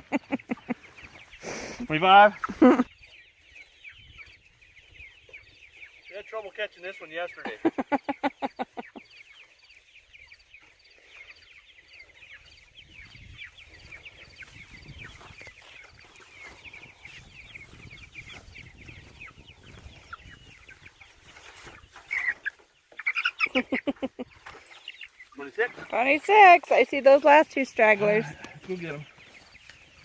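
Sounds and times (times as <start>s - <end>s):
chickens peeping and clucking: 0.0s - 30.0s.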